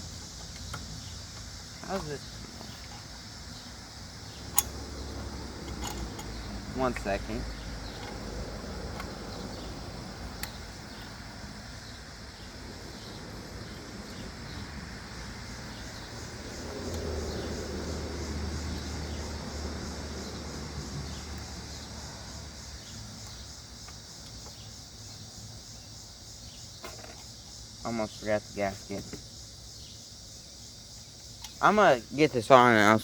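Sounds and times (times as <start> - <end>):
insects chirping: 0.0 - 33.0
vehicle passing with low rumble: 3.2 - 23.2.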